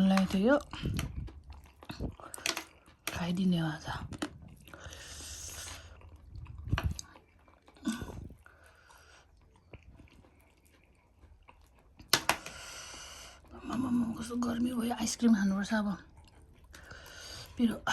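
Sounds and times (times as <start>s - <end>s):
person chewing noodles: 0.0s - 14.7s, 15.7s - 17.9s
sharp clicks or knocks: 12.1s - 12.6s.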